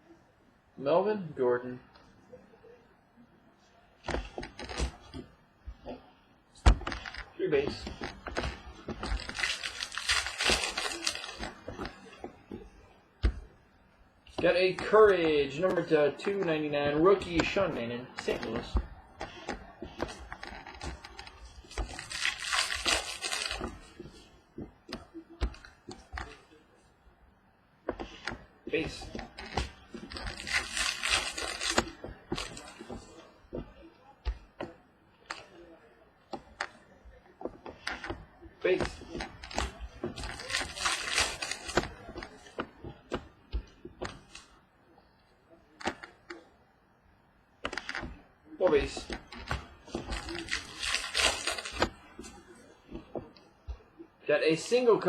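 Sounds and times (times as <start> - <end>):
cards clicking and snapping: 4.0 - 5.3, 6.6 - 13.5, 14.3 - 26.5, 27.9 - 35.6, 36.3 - 44.6, 45.8 - 46.4, 47.6 - 53.4
foil wrapper crinkling: 6.9 - 12.6, 17.2 - 24.3, 28.8 - 33.7, 37.6 - 43.3, 47.7 - 52.5
trading cards clicking and tapping: 14.3 - 26.5.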